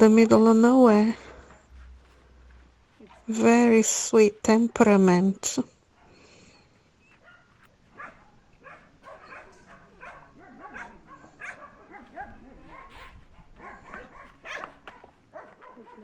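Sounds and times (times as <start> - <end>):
dog barking and yipping: 7.1 - 16.0.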